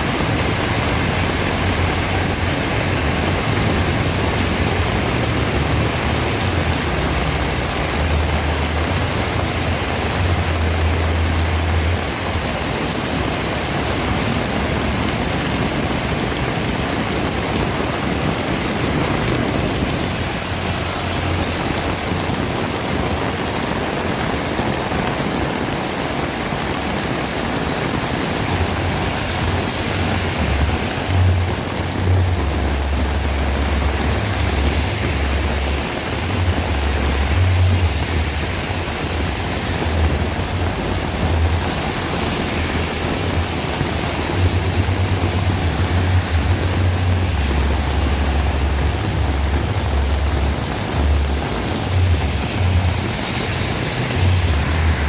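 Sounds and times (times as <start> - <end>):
heavy rain pouring: 0.0 - 55.0
low rumble: 28.5 - 55.0.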